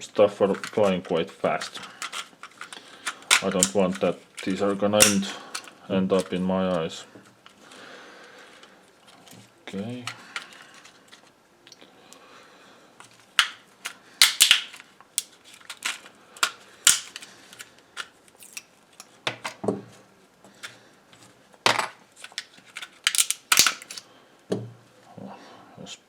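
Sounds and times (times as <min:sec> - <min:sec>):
plastic cracking: 0:01.5 - 0:06.3, 0:13.1 - 0:19.6, 0:22.2 - 0:24.0
small metal parts clinking: 0:01.6 - 0:05.7, 0:22.2 - 0:24.0.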